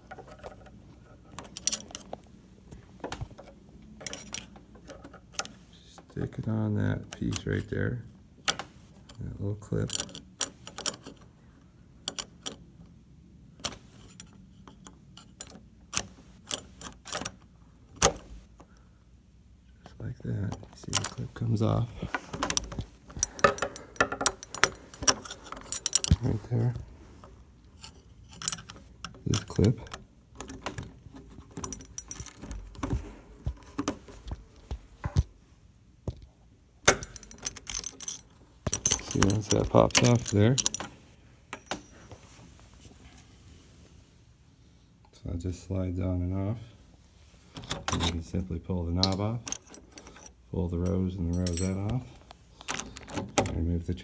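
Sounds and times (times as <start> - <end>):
screwdriver clicking on metal latch: 0.0 - 2.2, 3.0 - 5.6, 13.6 - 18.3, 22.2 - 26.3, 27.8 - 34.1, 36.8 - 40.9, 47.6 - 48.3, 49.0 - 53.6.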